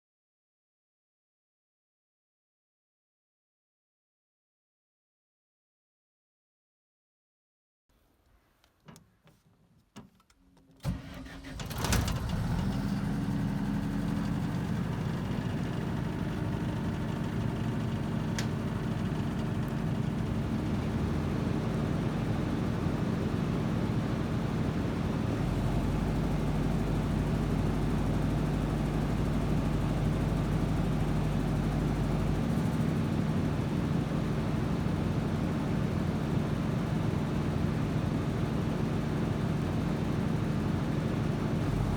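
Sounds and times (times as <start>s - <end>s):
diesel generator starting and running: 10.6s - 41.9s.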